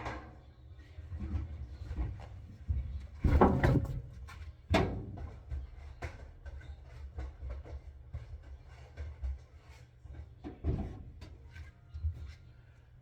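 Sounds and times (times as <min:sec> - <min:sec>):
household knocks and bumps: 0:03.2 - 0:04.2.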